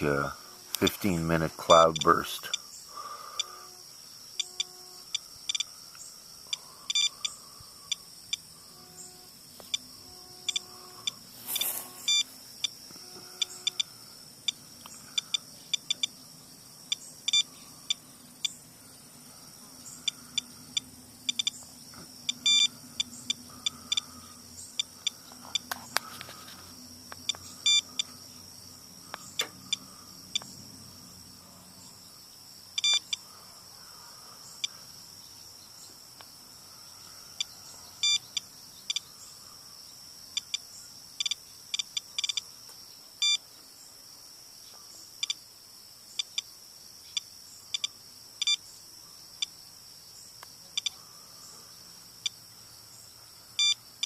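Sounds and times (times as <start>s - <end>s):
geiger counter beeping: 0.0s - 2.6s, 4.4s - 5.7s, 6.5s - 8.5s, 9.6s - 14.6s, 15.2s - 16.2s, 16.9s - 18.6s, 20.0s - 21.6s, 22.3s - 25.7s, 27.2s - 28.1s, 32.8s - 33.2s, 37.4s - 39.1s, 41.2s - 42.4s, 47.2s - 48.6s.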